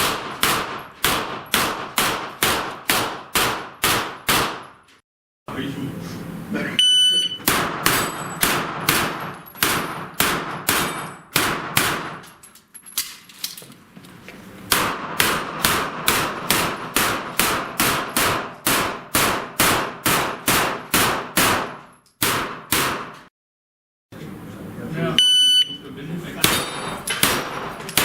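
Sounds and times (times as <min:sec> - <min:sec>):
rapid gunshots: 0:00.0 - 0:04.7, 0:07.4 - 0:12.2, 0:14.7 - 0:23.2, 0:27.2 - 0:28.0
steel targets clanging: 0:07.1 - 0:11.4, 0:26.4 - 0:28.0.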